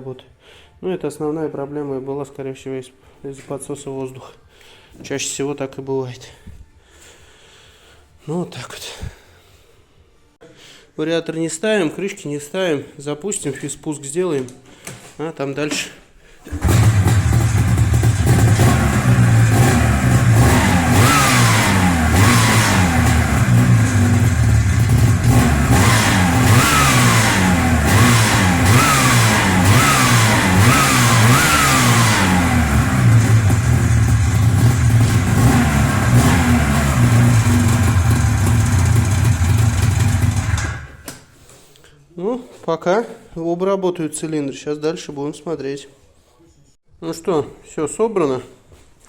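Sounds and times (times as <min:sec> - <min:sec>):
snowmobile engine idling and revving: 0:16.5 - 0:40.9.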